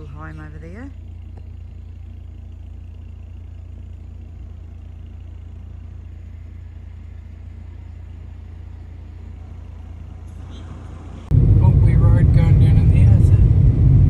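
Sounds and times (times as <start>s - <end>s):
car interior road and engine noise: 0.0s - 14.0s.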